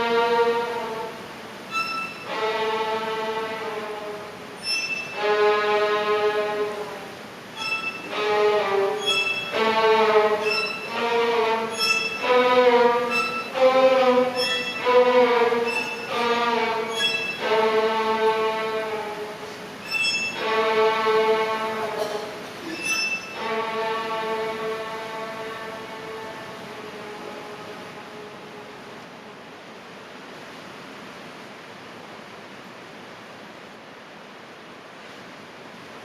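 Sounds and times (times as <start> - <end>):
orchestral strings slow melody: 0.0 - 29.6
short high pinging notes: 1.7 - 2.2, 4.6 - 5.2, 7.6 - 8.2, 10.4 - 11.0, 11.7 - 12.3, 16.9 - 17.5, 19.8 - 20.5, 22.6 - 23.4.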